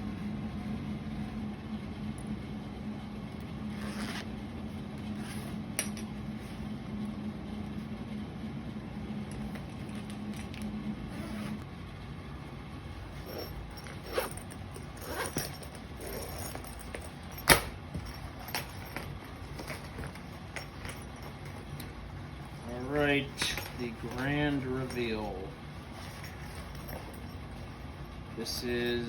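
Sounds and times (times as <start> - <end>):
small machine humming: 0.0 - 29.0
light clicks and clinks: 22.8 - 25.4.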